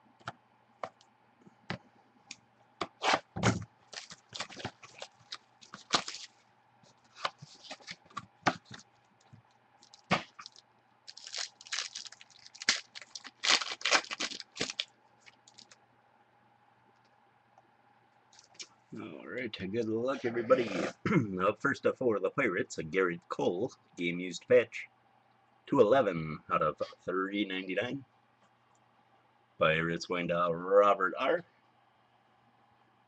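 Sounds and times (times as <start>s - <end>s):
faint electrical hum: 0.0s - 33.0s
plastic wrapping tearing and crinkling: 3.9s - 6.4s, 7.1s - 8.8s, 9.8s - 15.8s.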